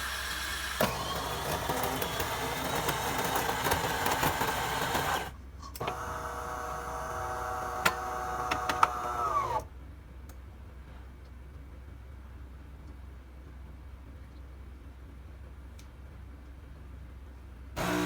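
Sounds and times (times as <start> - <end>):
coffee machine grinder whirring: 0.0 - 9.6, 17.8 - 18.0
coffee machine motor hum: 0.0 - 9.6, 17.8 - 18.0.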